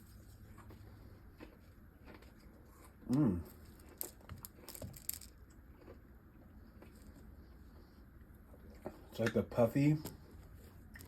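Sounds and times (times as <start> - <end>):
chewing candy: 0.0 - 7.6.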